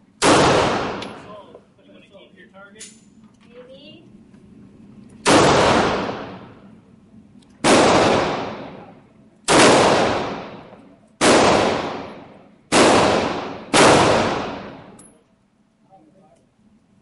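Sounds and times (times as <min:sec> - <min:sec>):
gunshots with echoing tail: 0:00.2 - 0:01.4, 0:05.2 - 0:06.6, 0:07.6 - 0:15.0.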